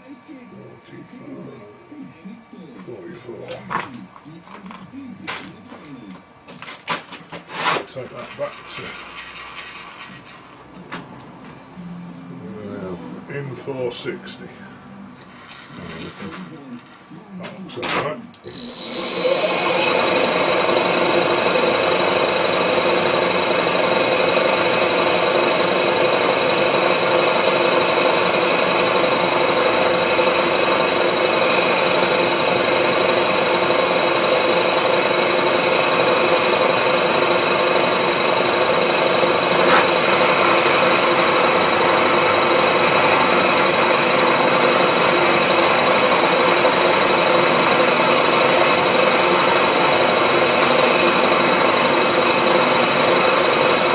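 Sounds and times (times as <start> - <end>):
milling machine whine: 0.0 - 6.7, 7.4 - 53.9.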